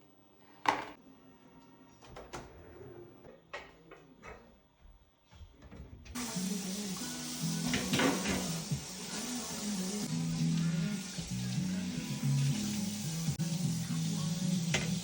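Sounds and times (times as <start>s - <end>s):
background music: 6.2s - 15.0s
kitchen knocks and clatters: 7.7s - 8.6s, 14.7s - 15.0s.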